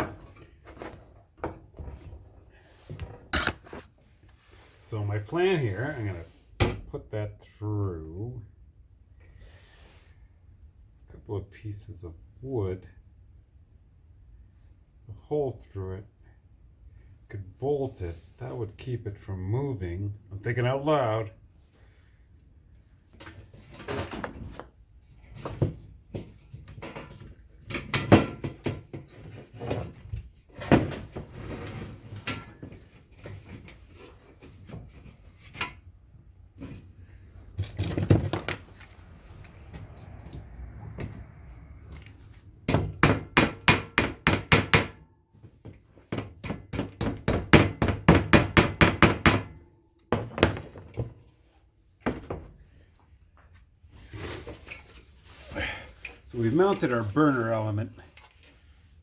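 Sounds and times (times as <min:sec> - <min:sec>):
parts and tools clattering: 0:02.9 - 0:03.9, 0:25.2 - 0:36.0, 0:36.6 - 0:39.0.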